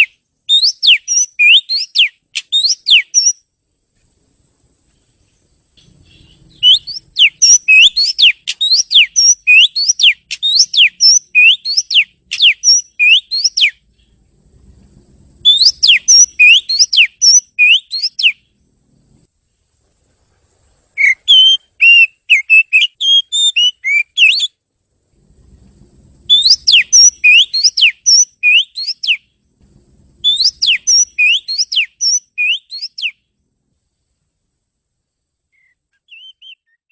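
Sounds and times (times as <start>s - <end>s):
bird singing whistled notes: 0.0s - 3.5s, 5.8s - 14.1s, 15.4s - 18.5s, 21.0s - 24.6s, 26.2s - 29.3s, 30.2s - 33.3s, 35.5s - 36.9s.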